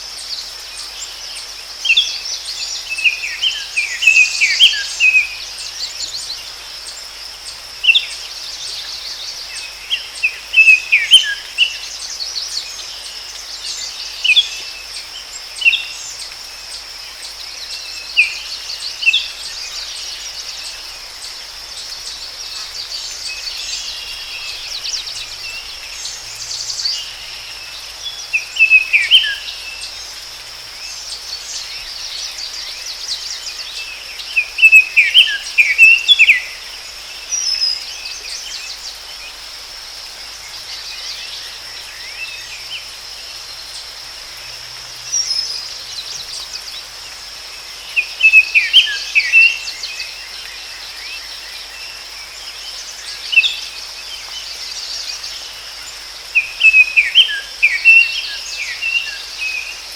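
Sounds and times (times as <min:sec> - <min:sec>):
high insect trill: 0:00.0 - 0:59.9
birds chirping: 0:18.2 - 0:30.2.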